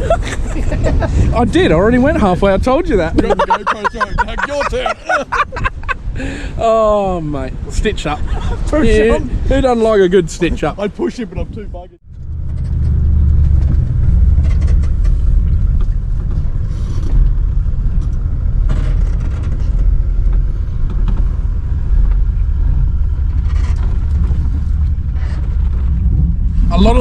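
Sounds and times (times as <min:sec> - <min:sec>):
engine and tyre rumble: 0:00.0 - 0:27.0
knocks and rattles: 0:12.1 - 0:26.5.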